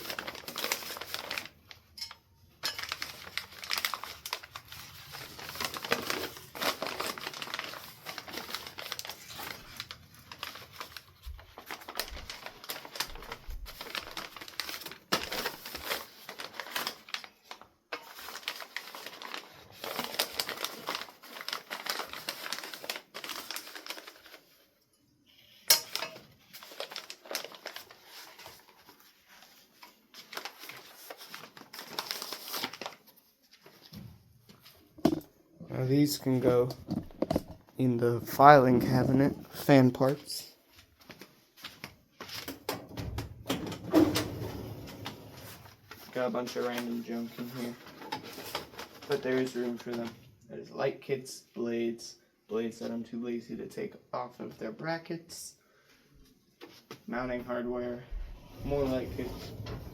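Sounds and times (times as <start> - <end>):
wrapping material crinkling: 0.0 - 35.2, 44.8 - 50.3.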